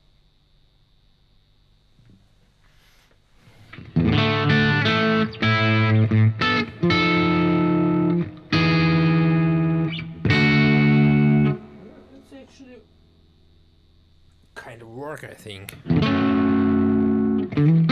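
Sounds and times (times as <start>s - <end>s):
electric guitar chords: 3.8s - 12.2s, 15.5s - 17.9s.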